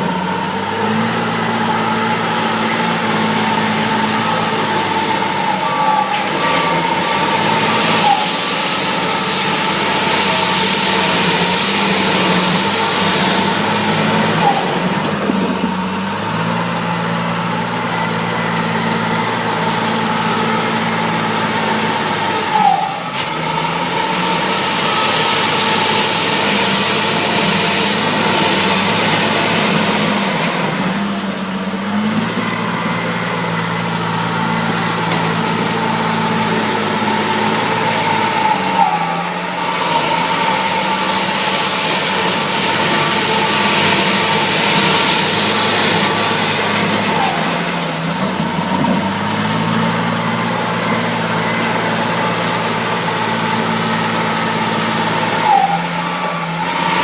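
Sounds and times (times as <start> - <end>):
diesel engine running: 0.0 - 57.0
hiss: 6.5 - 14.5.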